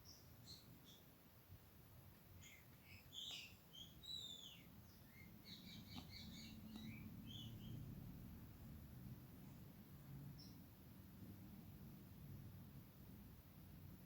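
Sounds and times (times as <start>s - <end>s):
faint high bird chirps: 0.0s - 1.2s, 2.3s - 8.1s, 10.3s - 10.7s.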